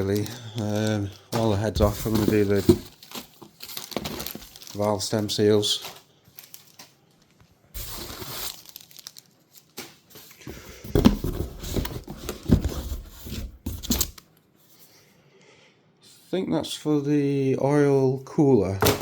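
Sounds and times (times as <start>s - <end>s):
packaging tearing: 0.0s - 5.0s, 5.8s - 6.9s, 7.8s - 10.3s
packaging rustling: 0.0s - 14.2s.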